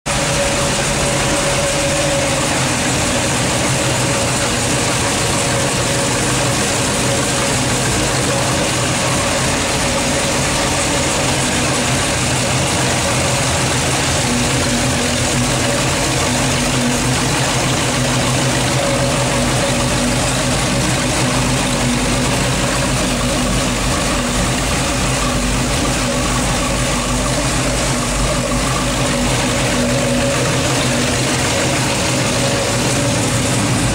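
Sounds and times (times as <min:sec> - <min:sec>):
car engine idling: 0:00.0 - 0:33.9.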